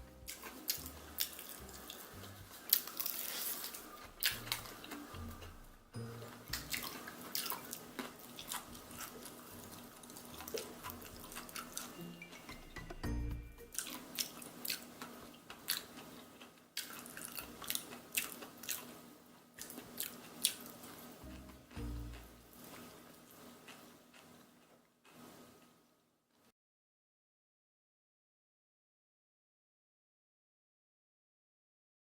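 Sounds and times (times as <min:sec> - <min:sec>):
soft background music: 0:00.0 - 0:14.2, 0:21.2 - 0:22.7
crunching fried chicken: 0:00.2 - 0:05.7, 0:06.4 - 0:12.1, 0:13.7 - 0:25.8.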